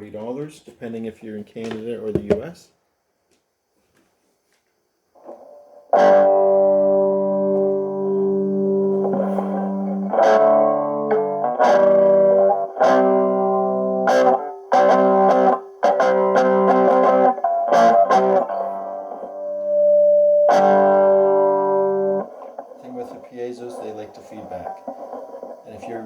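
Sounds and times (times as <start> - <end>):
amplified guitar chords strummed: 5.3 - 22.8.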